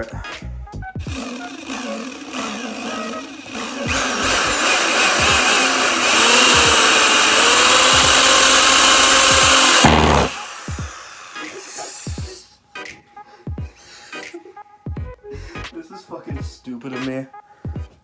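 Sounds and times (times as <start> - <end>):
power drill driving into wood: 1.1 - 12.2.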